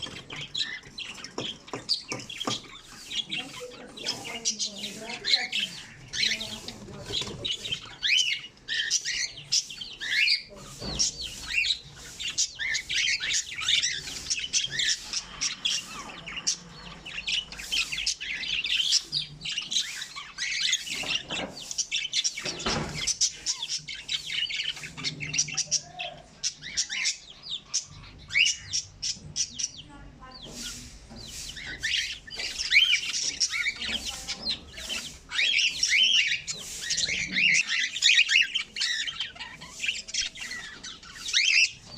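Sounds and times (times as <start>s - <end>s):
many birds chirping: 0.0s - 41.9s.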